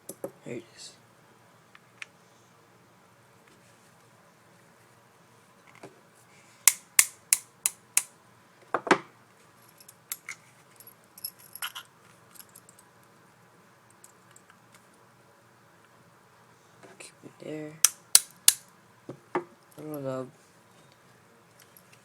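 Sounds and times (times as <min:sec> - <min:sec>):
sharp taps of metal parts: 0:06.7 - 0:08.1, 0:17.8 - 0:18.6
light clicks and handling rustle: 0:20.7 - 0:22.0.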